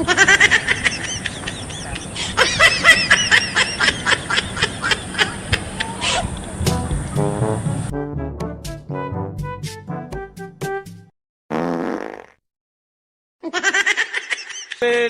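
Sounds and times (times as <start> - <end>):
young women giggling: 0.0 - 6.6.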